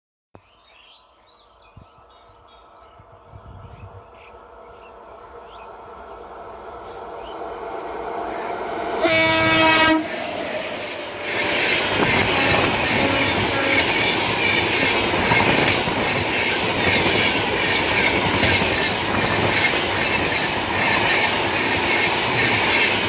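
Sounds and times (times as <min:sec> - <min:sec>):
electric locomotive running noise: 0:03.0 - 0:23.0
train rushing and rattling: 0:03.0 - 0:23.0
train horn blast: 0:08.9 - 0:15.1.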